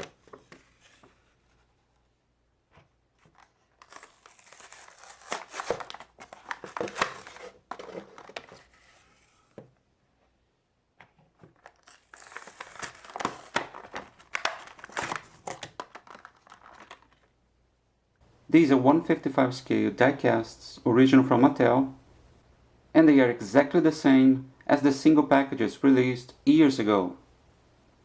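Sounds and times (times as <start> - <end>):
toy packaging crinkling: 3.3 - 8.6, 11.6 - 17.3.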